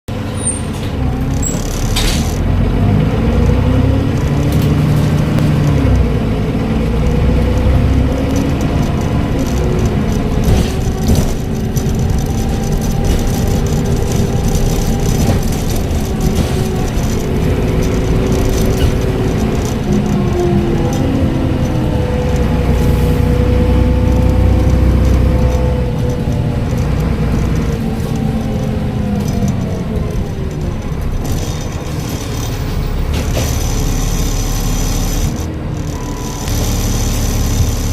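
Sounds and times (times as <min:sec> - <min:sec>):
bus diesel engine: 0:00.0 - 0:37.9
turbocharger whistle: 0:33.6 - 0:37.9.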